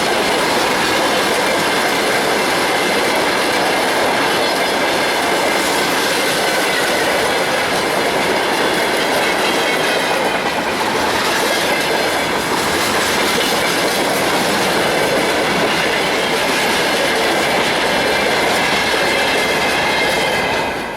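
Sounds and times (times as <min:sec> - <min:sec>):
train wheels rumbling on rails: 0:00.0 - 0:20.9.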